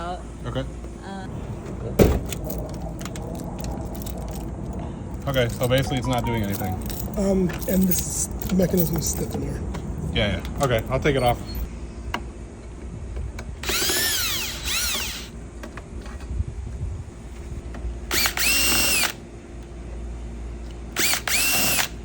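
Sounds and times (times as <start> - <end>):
power drill spinning: 13.6 - 15.4, 18.1 - 19.2, 21.0 - 22.0.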